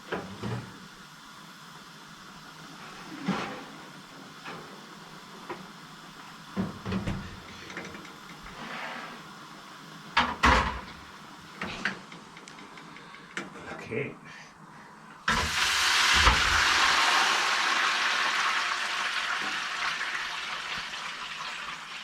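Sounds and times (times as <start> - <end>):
kitchen knocks and clunks: 6.6 - 7.4, 10.2 - 11.0.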